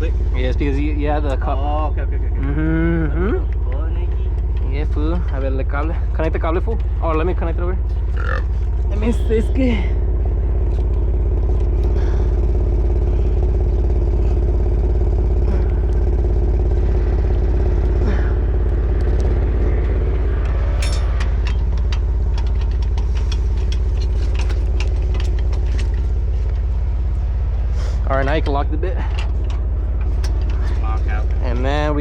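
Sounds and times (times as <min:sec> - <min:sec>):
truck engine idling: 0:00.0 - 0:32.0
metal clicks and rattles: 0:17.1 - 0:26.8, 0:28.3 - 0:31.7.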